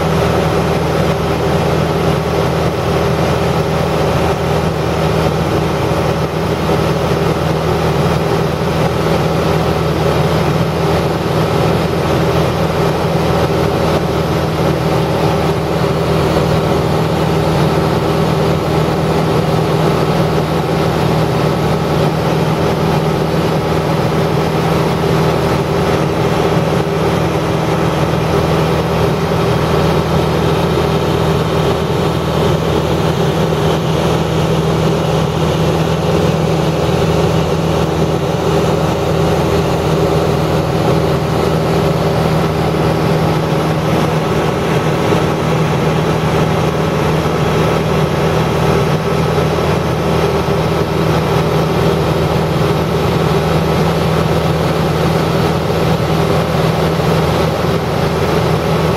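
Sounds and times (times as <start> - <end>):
engine humming steadily: 0.0 - 58.9.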